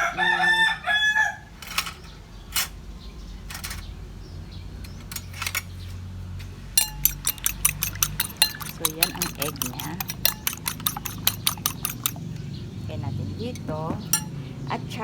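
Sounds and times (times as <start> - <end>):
rooster crowing: 0.0 - 1.5
fork beating egg in bowl: 6.8 - 12.6, 13.6 - 14.4.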